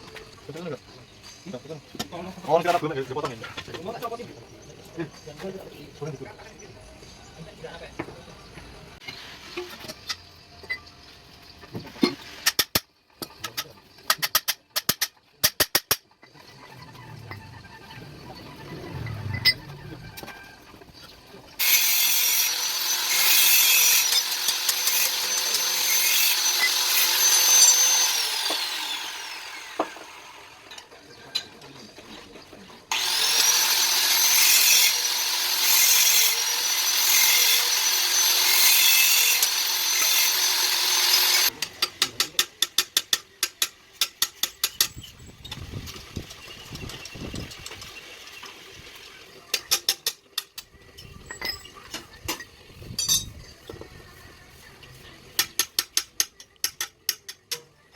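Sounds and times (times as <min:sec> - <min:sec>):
power tool whining and grinding metal: 0:21.6 - 0:31.1, 0:32.9 - 0:41.6.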